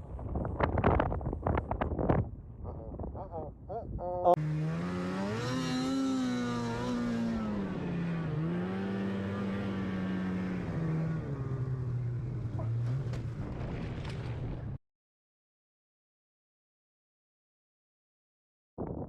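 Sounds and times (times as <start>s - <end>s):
snowmobile engine revving: 4.3s - 13.2s.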